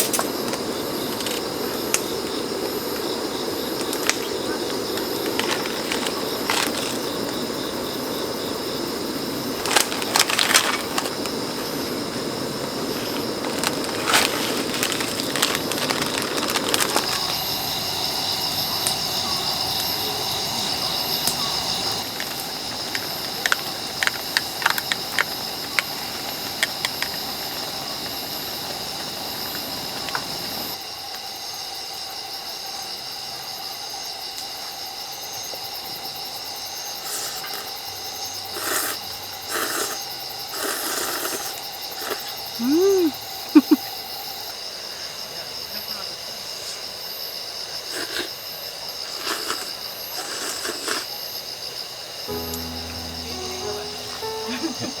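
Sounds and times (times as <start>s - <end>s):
insects chirring: 0.0s - 55.0s.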